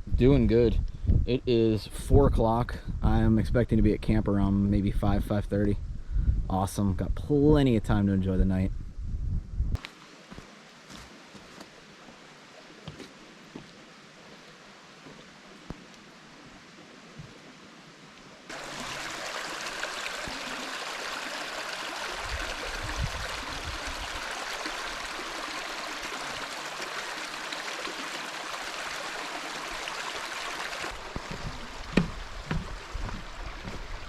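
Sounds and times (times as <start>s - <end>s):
creek water rushing: 9.8s - 34.0s
short thumps: 31.1s - 33.8s.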